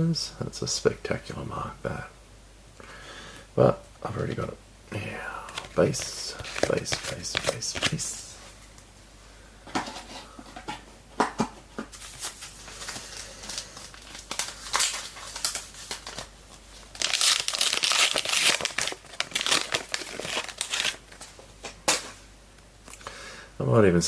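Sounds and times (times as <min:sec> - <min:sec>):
wrapper tearing and crinkling: 0:12.0 - 0:21.3.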